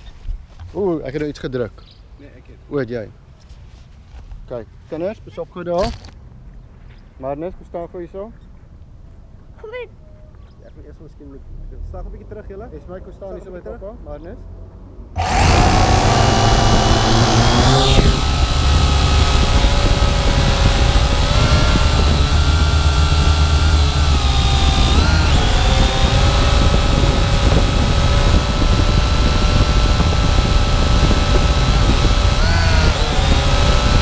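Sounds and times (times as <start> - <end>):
quadcopter propellers whirring: 15.2 - 34.0.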